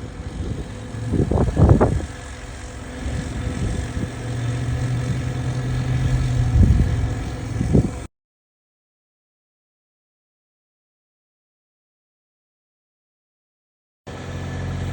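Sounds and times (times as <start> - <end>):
engine running: 0.0 - 8.1, 14.1 - 14.9.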